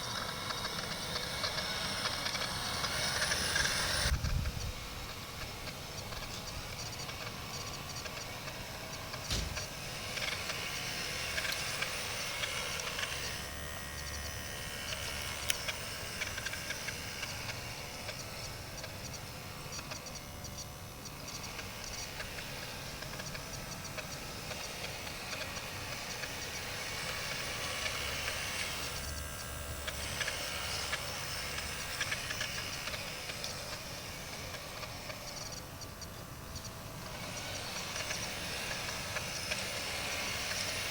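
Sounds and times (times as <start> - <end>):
small electric motors whining: 0.0 - 40.9
sharp knock: 9.3 - 9.7.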